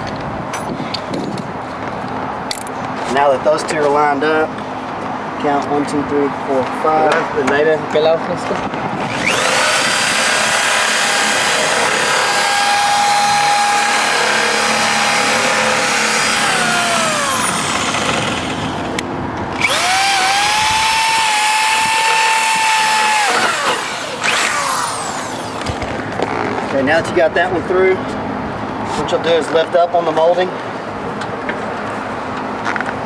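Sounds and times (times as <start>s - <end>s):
electric drill boring through metal: 9.1s - 19.0s, 19.6s - 25.9s.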